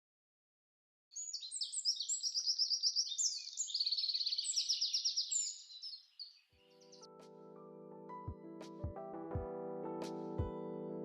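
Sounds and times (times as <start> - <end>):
starling singing: 1.2 - 6.0.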